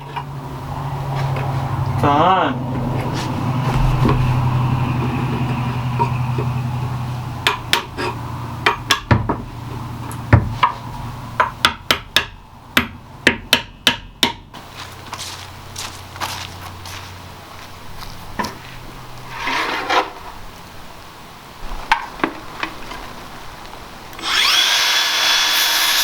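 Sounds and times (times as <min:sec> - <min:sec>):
steady low hum: 0:00.0 - 0:11.4
sharp knocks on wood: 0:03.7 - 0:06.2.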